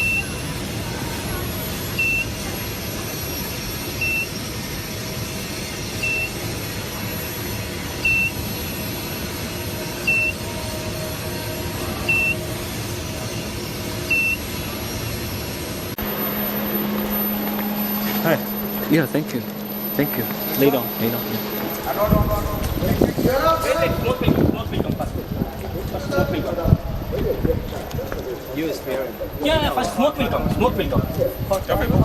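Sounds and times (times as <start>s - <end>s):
machinery noise: 0.0s - 32.0s
steady low hum: 0.4s - 31.4s
high electronic beep: 10.0s - 10.4s, 12.1s - 12.4s, 16.0s - 24.6s.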